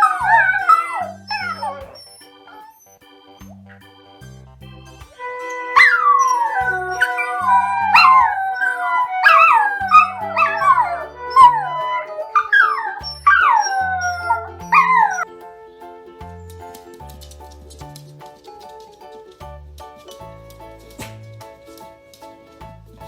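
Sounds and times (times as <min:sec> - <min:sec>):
dog crying: 0:00.0 - 0:03.6, 0:05.2 - 0:15.3
background music: 0:00.0 - 0:23.0.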